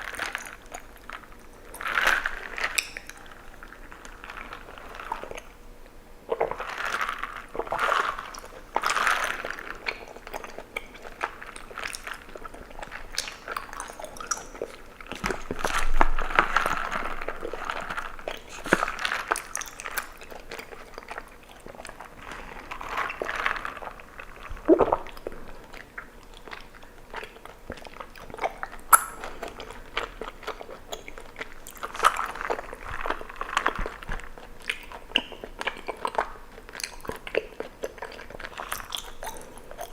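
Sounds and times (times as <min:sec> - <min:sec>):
chewing tapioca pearls: 0:00.0 - 0:39.9
wet mouth clicks: 0:24.5 - 0:29.8.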